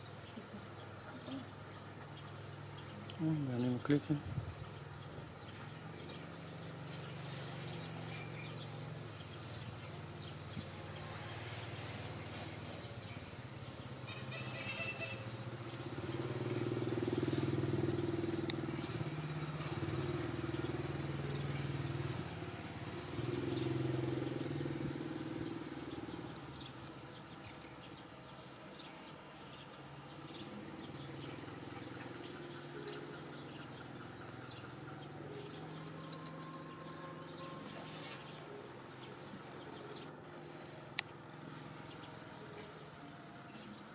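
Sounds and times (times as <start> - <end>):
low engine hum: 0.0 - 43.9.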